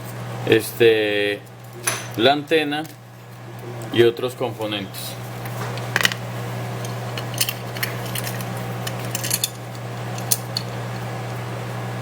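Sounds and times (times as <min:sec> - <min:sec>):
low electrical hum: 0:00.0 - 0:12.0
metal tools clicking and clinking: 0:06.8 - 0:09.6.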